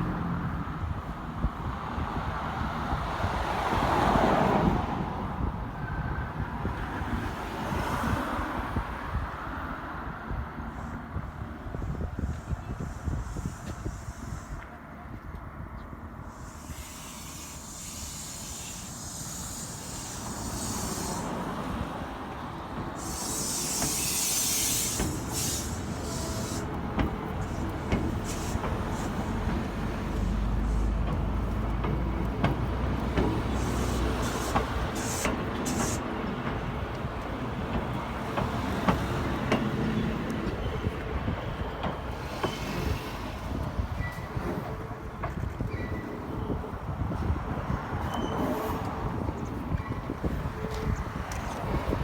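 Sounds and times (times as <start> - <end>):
train rumbling: 0.0 - 52.0
air hissing: 12.1 - 14.7, 16.2 - 21.9, 22.8 - 41.0.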